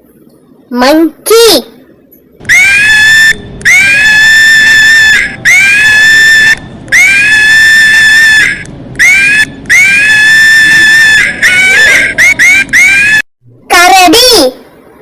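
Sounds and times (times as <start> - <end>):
monkey screaming: 2.5 - 13.3.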